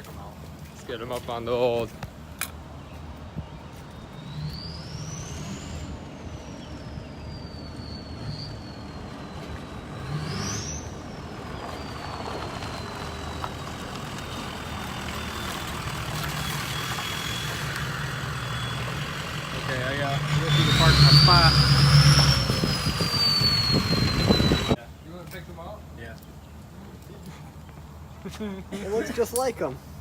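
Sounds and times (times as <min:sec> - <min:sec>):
diesel truck engine whining: 0:04.0 - 0:24.8.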